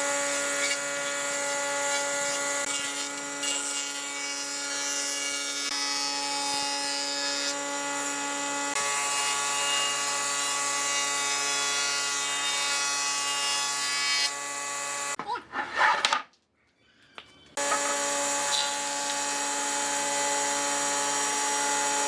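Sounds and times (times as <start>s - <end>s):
electric power tool whining: 4.6s - 12.5s, 17.6s - 22.0s.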